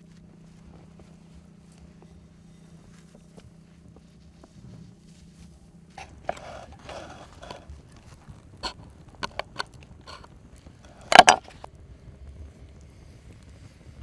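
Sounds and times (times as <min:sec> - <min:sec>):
soft rustling: 0:00.0 - 0:11.7
sharp clicks and knocks: 0:08.6 - 0:11.7.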